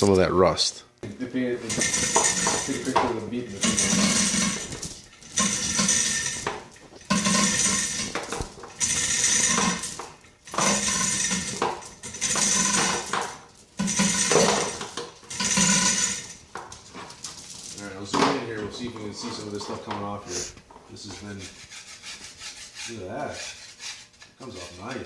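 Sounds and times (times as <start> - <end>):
scraping metal anvil: 1.6 - 16.3.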